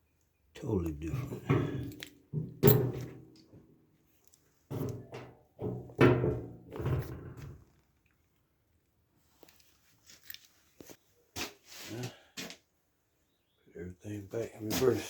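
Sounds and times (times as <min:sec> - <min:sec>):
metal parts clunking: 0:01.6 - 0:03.2.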